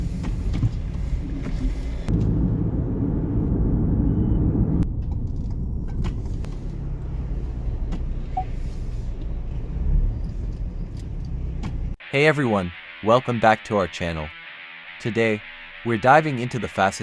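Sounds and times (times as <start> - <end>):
low steady rumble: 0.0 - 12.0.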